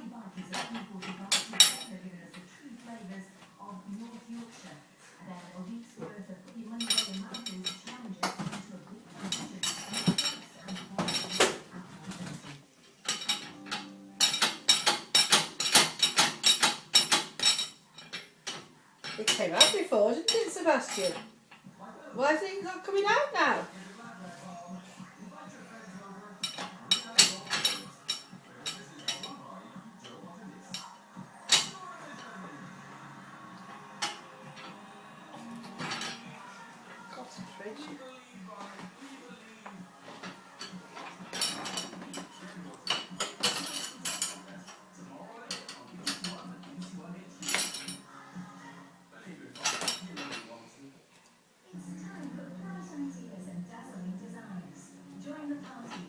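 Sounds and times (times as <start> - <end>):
spoon clattering in a dishwasher: 0.2 - 2.5, 6.8 - 21.6, 25.8 - 32.3, 33.6 - 34.8, 35.4 - 36.5, 40.1 - 48.1, 49.5 - 50.5.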